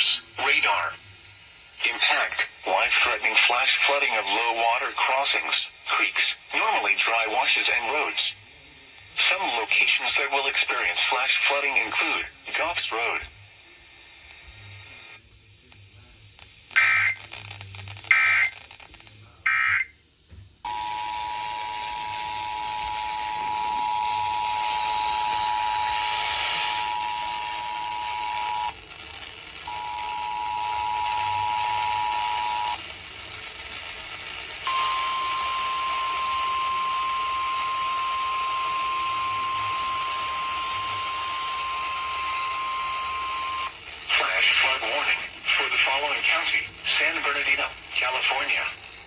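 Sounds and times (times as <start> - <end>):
radio hiss: 0.0 - 49.0
screechy data tones: 16.8 - 17.4, 18.0 - 18.8, 19.5 - 20.0
two-tone attention signal: 34.7 - 43.7.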